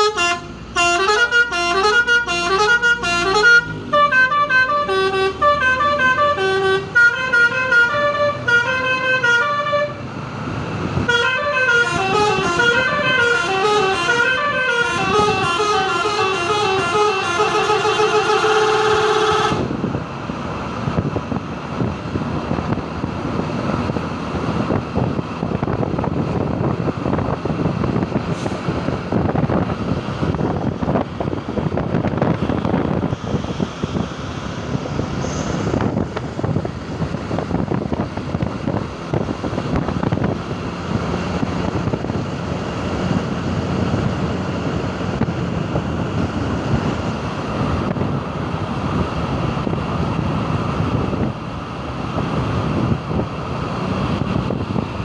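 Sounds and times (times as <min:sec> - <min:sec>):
musical bus horn warbling chord: 0:00.0 - 0:10.0, 0:11.1 - 0:19.7
road traffic noise: 0:00.0 - 0:55.0
wind buffeting microphone: 0:10.1 - 0:14.0, 0:19.5 - 0:55.0.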